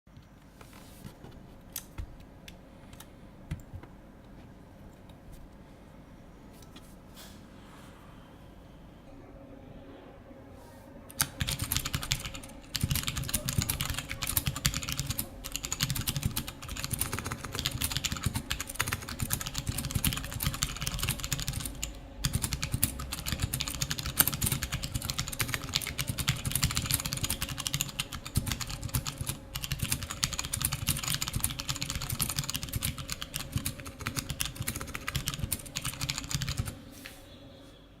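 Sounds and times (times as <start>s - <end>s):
typing on mechanical keyboard: 11.1s - 36.8s.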